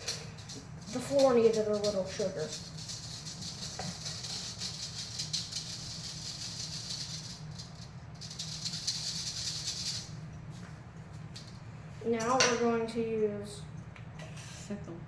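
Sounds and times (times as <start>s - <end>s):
sugar rattling in a bowl: 0.0s - 10.6s.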